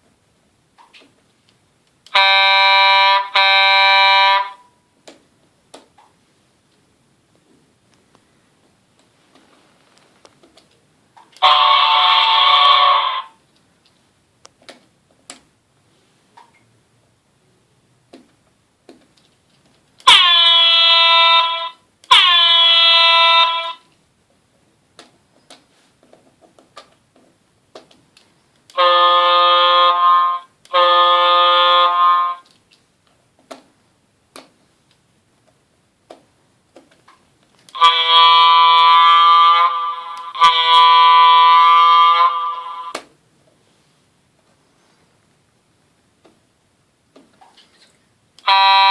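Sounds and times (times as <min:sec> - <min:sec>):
electronic horn honks: 0:02.1 - 0:04.7, 0:11.4 - 0:13.4, 0:20.0 - 0:23.9, 0:28.7 - 0:32.5, 0:37.7 - 0:43.0, 0:48.4 - 0:48.9.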